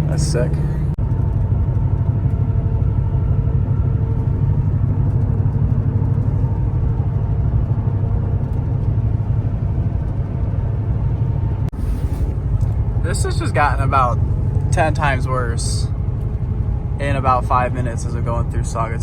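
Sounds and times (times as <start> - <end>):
pickup truck driving: 0.0 - 19.0
faint steady whine: 11.7 - 19.0.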